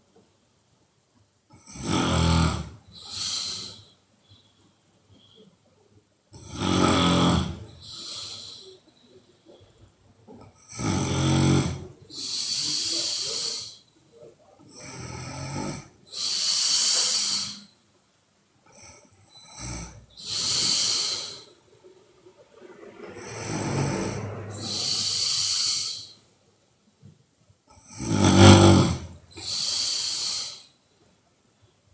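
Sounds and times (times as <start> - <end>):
woman snoring: 1.5 - 3.9, 6.4 - 8.8, 10.6 - 13.8, 14.7 - 17.7, 18.7 - 21.5, 23.0 - 26.2, 27.7 - 30.7
hissing breath: 2.9 - 5.6, 6.8 - 9.7, 10.8 - 14.0, 18.8 - 26.3, 28.0 - 30.8.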